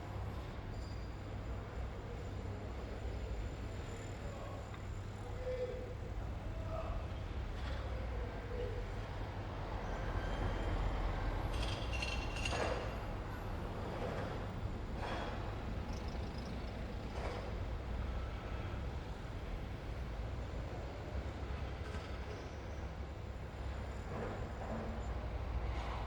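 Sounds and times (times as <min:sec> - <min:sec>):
traffic rumble: 0:07.3 - 0:21.9.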